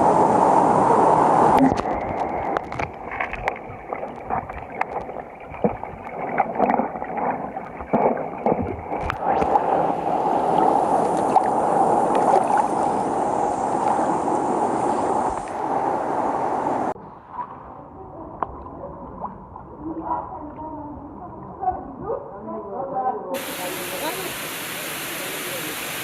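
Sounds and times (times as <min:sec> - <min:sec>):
river water splashing and gurgling: 0:00.0 - 0:17.9.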